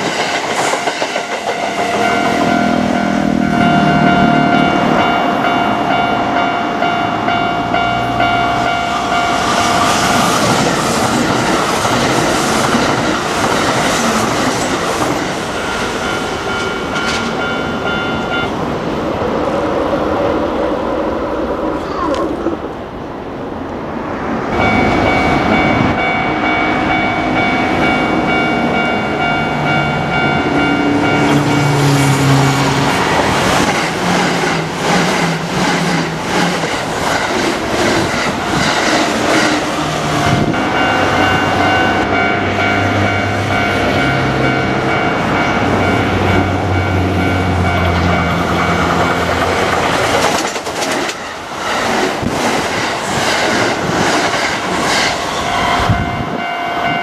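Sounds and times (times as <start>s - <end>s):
level crossing warning bell: 0.7s - 10.8s, 15.4s - 18.6s, 24.5s - 33.1s, 39.9s - 49.3s, 55.4s - 57.0s
train wheels clattering over rail joints: 48.7s - 55.3s.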